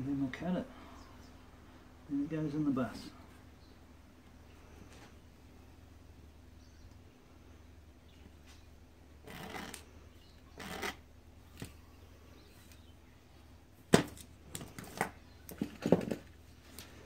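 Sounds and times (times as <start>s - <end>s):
blade scraping a tile: 9.2s - 9.8s, 10.5s - 11.0s.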